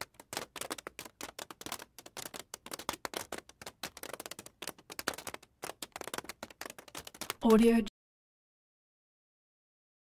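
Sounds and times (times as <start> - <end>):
computer keyboard typing: 0.0 - 7.6.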